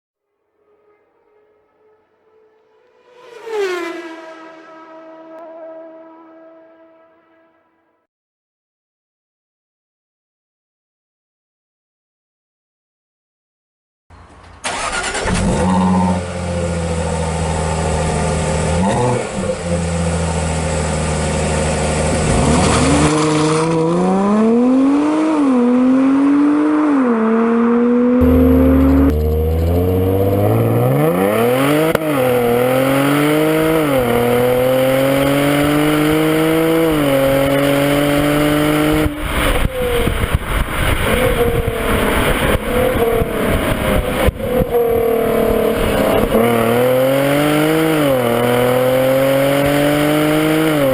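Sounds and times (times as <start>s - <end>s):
car accelerating through gears: 0.4s - 7.7s, 14.6s - 50.9s
engine rev blip: 0.4s - 7.8s, 14.2s - 16.2s, 22.2s - 50.8s
car engine idling: 28.2s - 30.9s.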